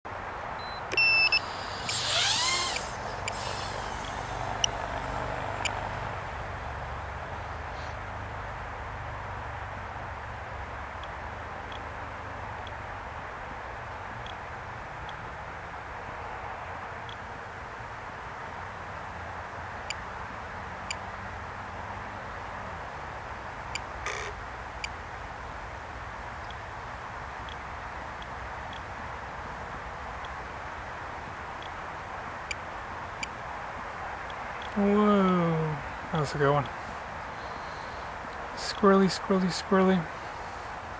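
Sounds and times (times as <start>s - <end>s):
short electronic beep: 0.6s - 1.5s
short high chirps: 0.6s - 4.8s
steady hiss: 0.9s - 5.1s
drone motors whining: 0.9s - 5.9s
faint clicks: 27.4s - 27.6s.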